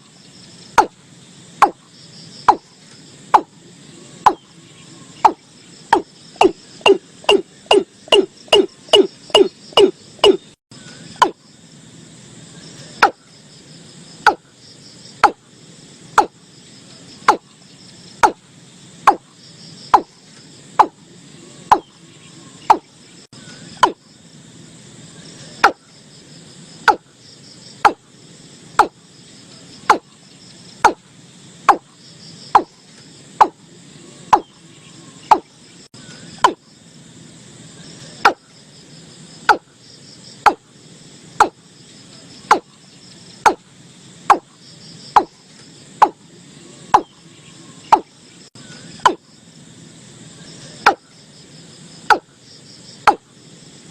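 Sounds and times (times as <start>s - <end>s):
insects hissing: 0.0s - 53.9s
bird calling sharp notes: 3.4s - 11.4s, 20.8s - 24.0s.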